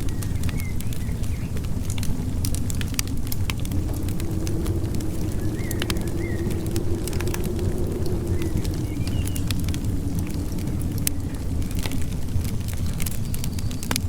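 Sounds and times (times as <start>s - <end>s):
wood fire crackling and popping: 0.0s - 14.0s
low rumble: 2.9s - 13.8s.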